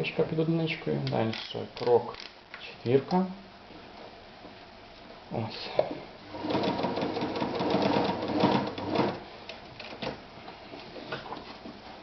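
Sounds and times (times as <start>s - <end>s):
sewing machine stitching: 6.3s - 9.2s.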